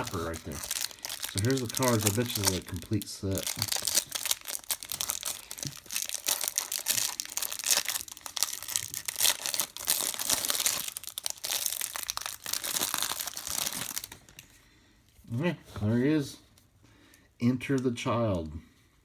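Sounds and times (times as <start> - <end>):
plastic wrapper crinkling: 0.0 - 14.5.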